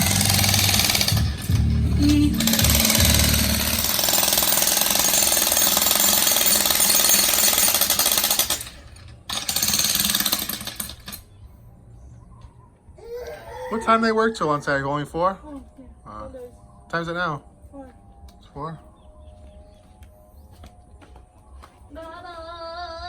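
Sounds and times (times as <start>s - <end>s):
jackhammer hammering: 0.0s - 11.3s.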